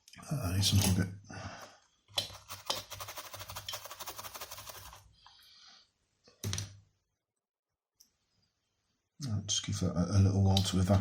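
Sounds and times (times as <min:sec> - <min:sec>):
scrubbing on circuit board: 0:02.2 - 0:05.0.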